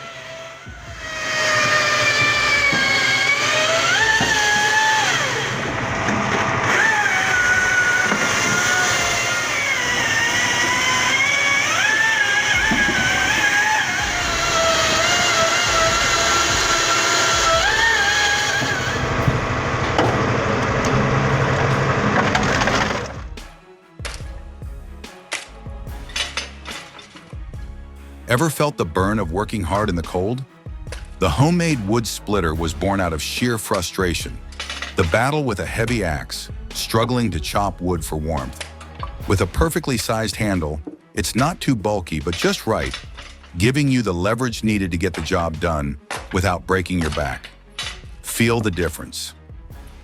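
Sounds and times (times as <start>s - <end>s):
machine whine: 0.0s - 23.6s
log splitter motor whining: 0.0s - 30.2s, 30.8s - 49.0s
wood cracking and splintering: 1.5s - 23.3s, 41.9s - 43.9s
sharp knocks: 12.6s - 15.0s, 18.6s - 21.2s.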